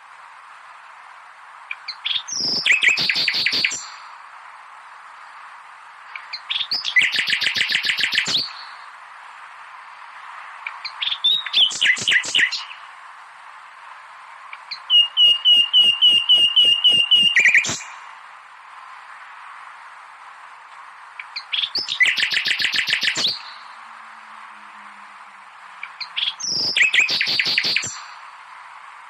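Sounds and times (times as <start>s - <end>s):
faint steady hiss: 0.0s - 29.0s
songbird chirping: 1.6s - 4.1s, 5.2s - 9.0s, 9.7s - 13.0s, 13.8s - 18.1s, 20.7s - 28.3s.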